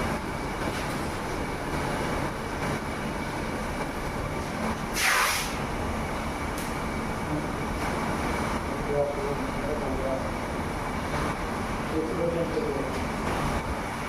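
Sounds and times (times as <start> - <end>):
factory machine noise: 0.0 - 14.0
short sharp hiss: 4.9 - 5.6.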